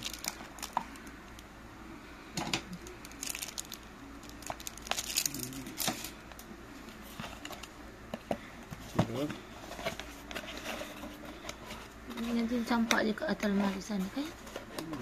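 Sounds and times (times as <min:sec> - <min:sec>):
packaging crinkling: 0:00.0 - 0:01.4, 0:02.8 - 0:06.1.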